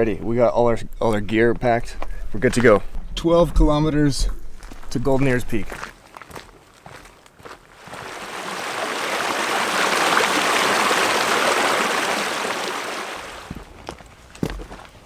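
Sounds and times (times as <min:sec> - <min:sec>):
mountain stream rushing: 0:07.7 - 0:13.7.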